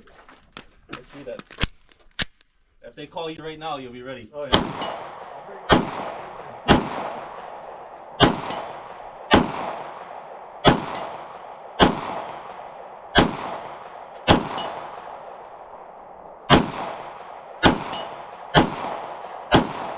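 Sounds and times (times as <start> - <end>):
pistol shots with echo: 4.4 - 19.9.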